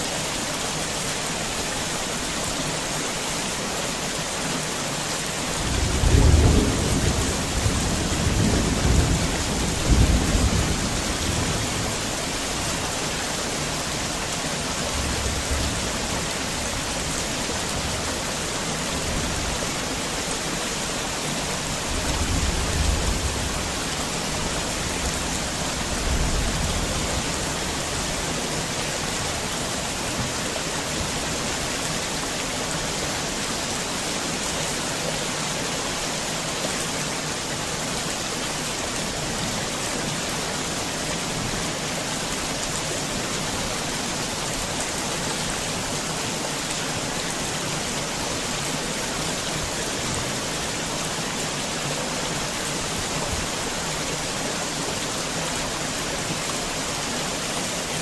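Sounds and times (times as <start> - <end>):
heavy rain hissing: 0.0 - 58.0
thunder rumbling: 5.6 - 12.0.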